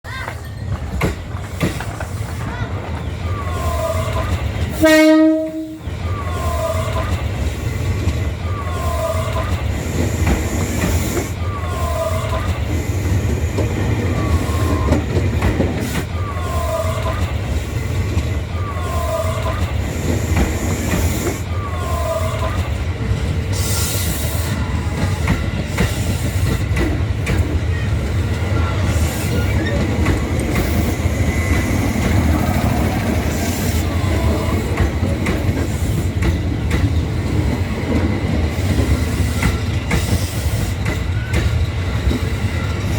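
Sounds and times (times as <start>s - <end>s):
electric train rumbling on rails: 0.0s - 42.9s.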